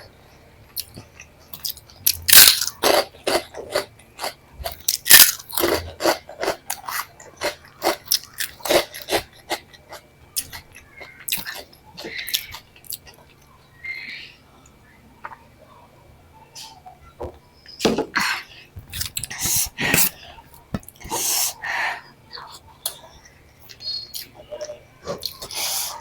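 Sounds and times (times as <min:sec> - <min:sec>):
person chewing crunchy food: 0:00.7 - 0:13.4.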